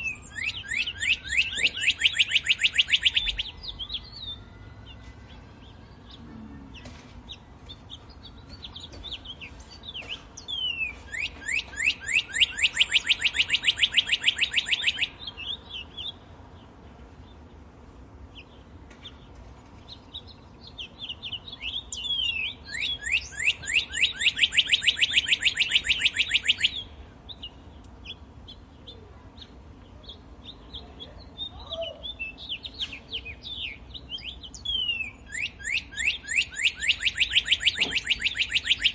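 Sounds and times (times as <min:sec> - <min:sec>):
bird singing rapid trill: 0:00.0 - 0:38.9.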